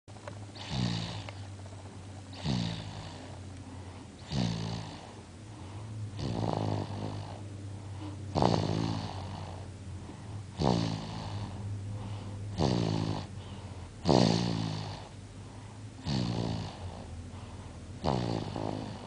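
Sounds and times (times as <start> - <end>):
baby snoring: 0.5 - 9.7, 10.5 - 15.2, 16.0 - 19.0.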